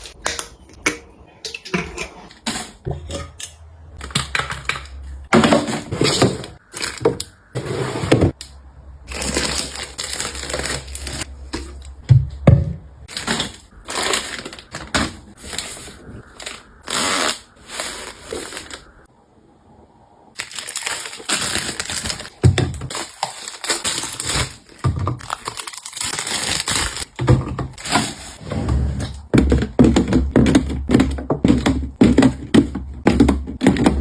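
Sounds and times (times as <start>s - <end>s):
packaging rustling and crinkling: 9.1s - 12.0s, 13.1s - 19.0s, 20.4s - 28.4s
bottles clicking and knocking: 29.0s - 34.0s.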